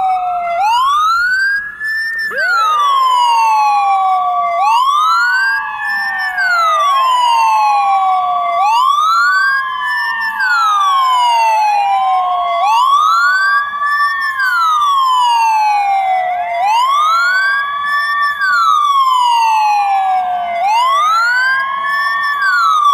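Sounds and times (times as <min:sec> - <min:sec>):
ambulance siren wailing: 0:00.0 - 0:22.9
second siren tone: 0:00.0 - 0:22.9.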